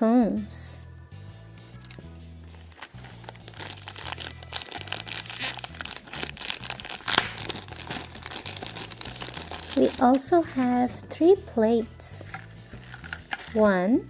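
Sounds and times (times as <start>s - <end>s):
plastic packaging crinkling: 1.8s - 10.8s, 12.2s - 13.7s.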